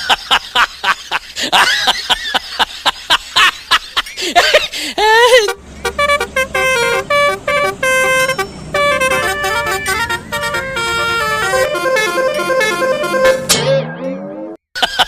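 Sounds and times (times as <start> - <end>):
bus horn playing a melody: 5.3 - 13.6.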